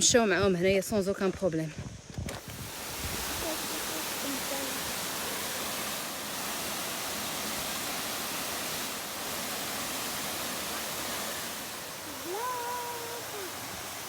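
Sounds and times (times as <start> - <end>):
river rushing: 2.4 - 14.0
person calling out: 12.1 - 13.6.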